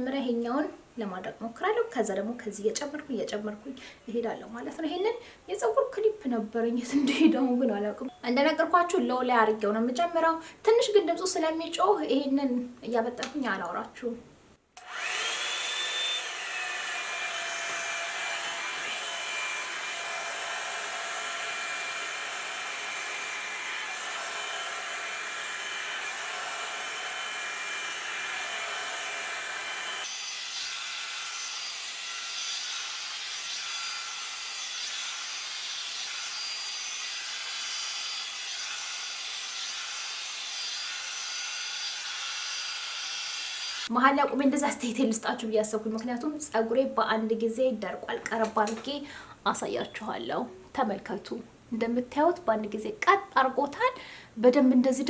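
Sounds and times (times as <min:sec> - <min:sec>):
hot-air brush dryer whining: 0:14.8 - 0:43.9.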